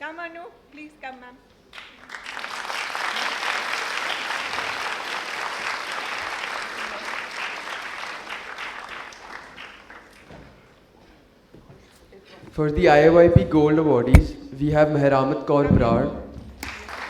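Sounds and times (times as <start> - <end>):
audience clapping: 1.7 - 10.8, 15.8 - 17.0.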